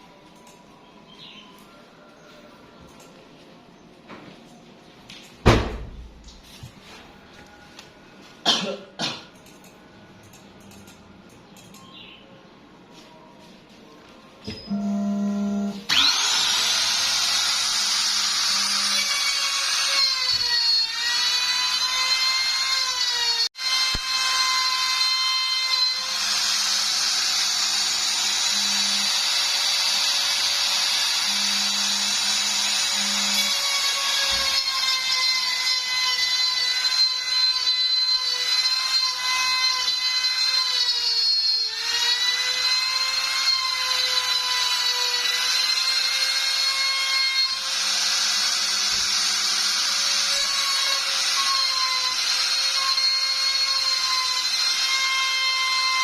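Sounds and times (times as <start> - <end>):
router spindle whining: 14.5 - 56.0.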